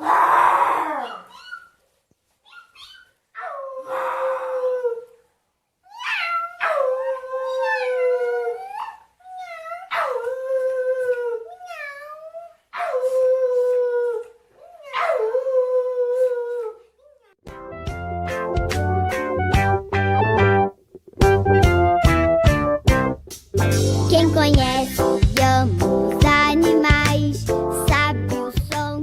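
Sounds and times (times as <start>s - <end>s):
dog howling: 0.0s - 1.6s, 6.0s - 16.8s.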